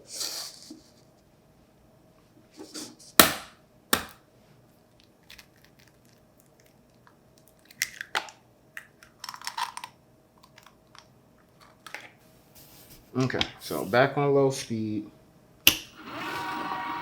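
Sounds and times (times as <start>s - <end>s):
eggs cracked against a cup: 5.2s - 11.1s.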